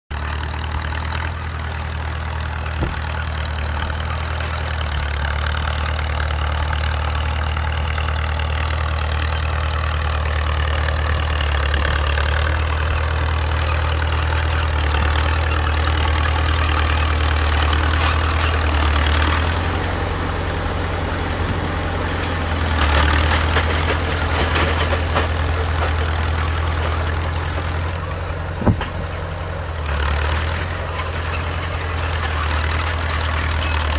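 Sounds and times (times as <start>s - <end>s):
bulldozer engine running: 0.1s - 33.9s.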